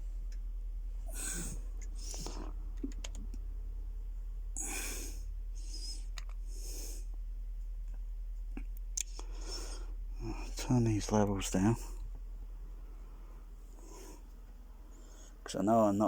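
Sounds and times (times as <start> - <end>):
breathy rustles: 0.0 - 15.5
faint clicks: 0.0 - 15.5
low electrical hum: 0.0 - 16.0.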